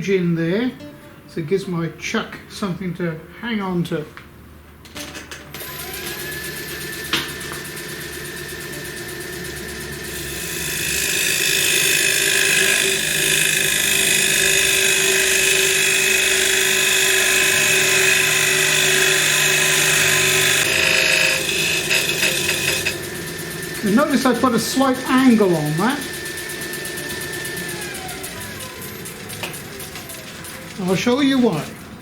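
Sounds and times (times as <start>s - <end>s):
lathe motor whine: 5.6s - 32.0s
tool cutting wood hiss: 10.0s - 29.8s.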